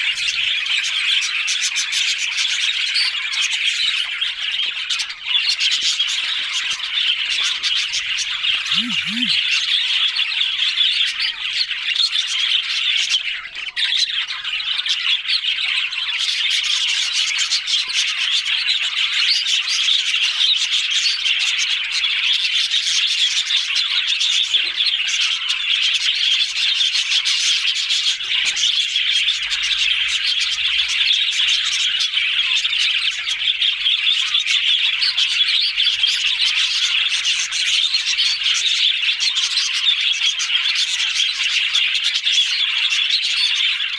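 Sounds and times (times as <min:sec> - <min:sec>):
budgerigars chattering and warbling: 0:07.9 - 0:09.4.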